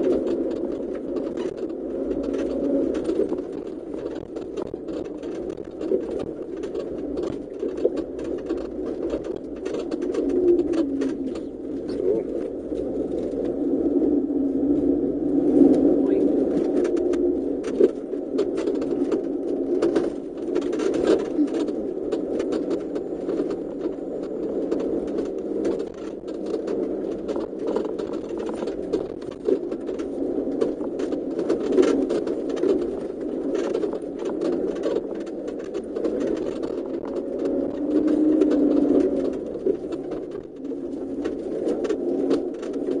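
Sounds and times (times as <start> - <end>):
vehicle rattles and knocks: 0.0 - 13.4, 16.1 - 24.0, 24.6 - 43.0
low engine drone: 0.0 - 33.4.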